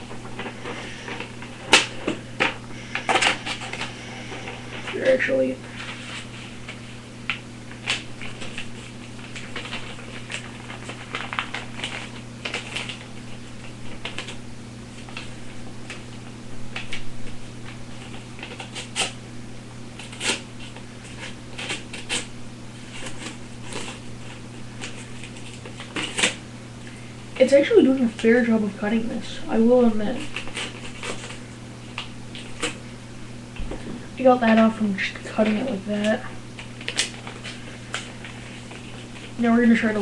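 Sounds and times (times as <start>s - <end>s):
paper rustling: 0.0s - 16.1s, 20.0s - 26.4s, 29.8s - 32.8s, 35.4s - 40.0s
knife cutting through paper: 18.0s - 19.2s, 20.0s - 26.4s, 30.0s - 32.8s.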